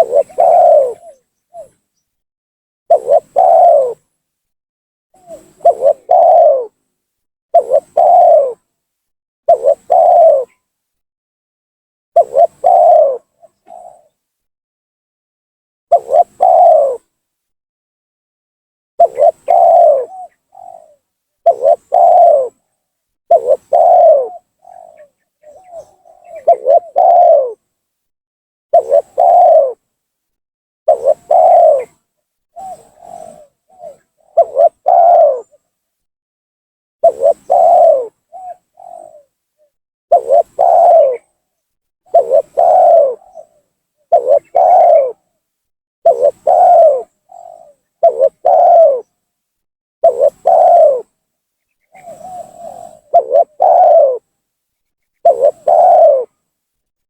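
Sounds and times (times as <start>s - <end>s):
dove cooing: 0.0s - 1.9s, 2.9s - 4.2s, 5.2s - 6.9s, 7.5s - 8.8s, 9.5s - 10.7s, 12.2s - 14.4s, 15.9s - 17.2s, 19.0s - 27.7s, 28.7s - 29.8s, 30.9s - 35.7s, 37.0s - 41.4s, 42.1s - 45.3s, 46.1s - 49.2s, 50.0s - 51.2s, 51.8s - 54.3s, 55.2s - 56.4s.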